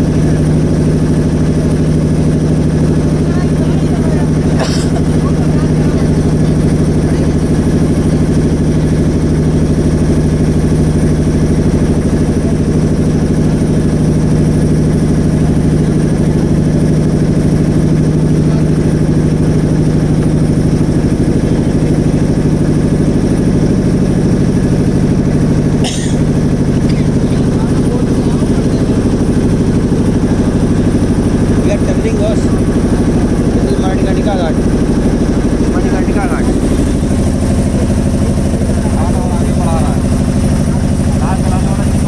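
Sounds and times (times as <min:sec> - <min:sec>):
motorboat engine droning: 0:00.0 - 0:42.0.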